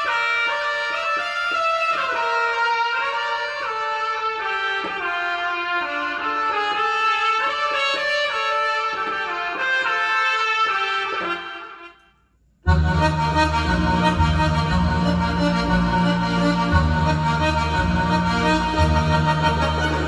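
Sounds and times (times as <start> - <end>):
keyboard melodic lead line: 12.7 - 20.0.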